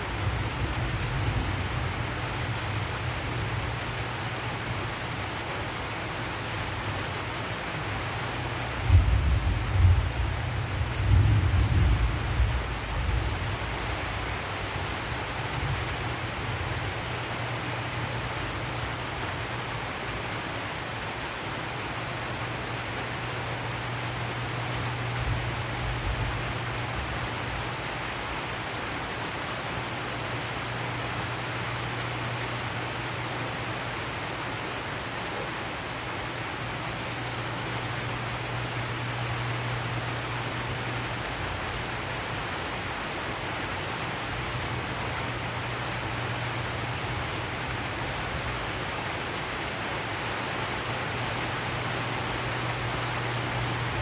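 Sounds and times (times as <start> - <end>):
rain on a metal roof: 0.0 - 54.0.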